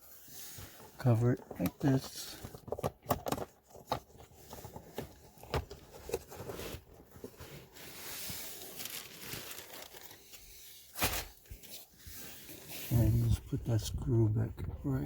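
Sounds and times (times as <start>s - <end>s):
rustling: 0.0s - 13.4s
plastic cover clicks and knocks: 1.6s - 5.8s.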